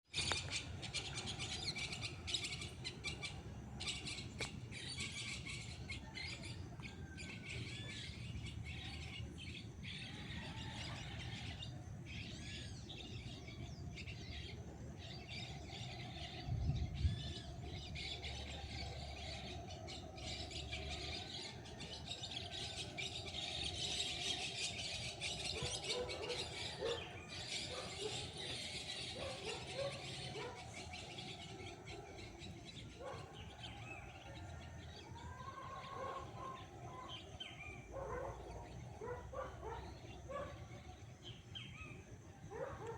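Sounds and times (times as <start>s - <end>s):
birds chirping: 0.1s - 42.9s
howler monkeys roaring: 14.0s - 42.9s.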